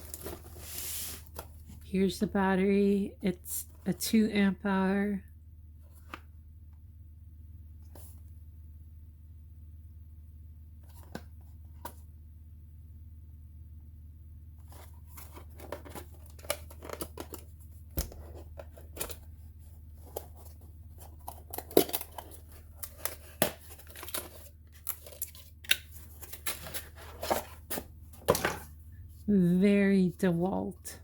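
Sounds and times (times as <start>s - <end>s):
packaging tearing and crinkling: 21.0s - 27.6s.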